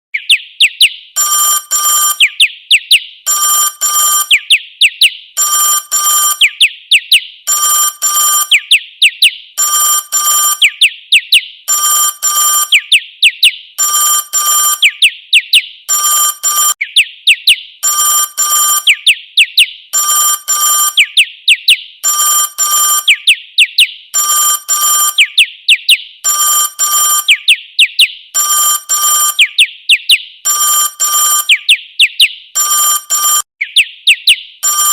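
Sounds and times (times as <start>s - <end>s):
bird chirps ringtone: 0.2s - 34.9s
telephone ringtone: 1.2s - 2.3s, 3.3s - 4.4s, 5.4s - 6.4s, 7.5s - 8.6s, 9.6s - 10.6s, 11.7s - 12.8s, 13.8s - 14.9s, 15.9s - 16.8s, 17.8s - 18.9s, 20.0s - 21.0s, 22.0s - 23.2s, 24.2s - 25.3s, 26.2s - 27.4s, 28.4s - 29.5s, 30.5s - 31.6s, 32.6s - 33.5s, 34.6s - 34.9s.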